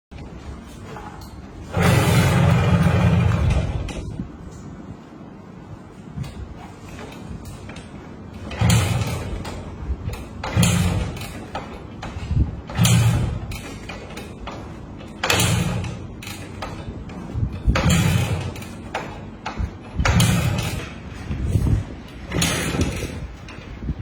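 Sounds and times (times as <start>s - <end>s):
motorcycle engine turning over: 1.6s - 4.1s.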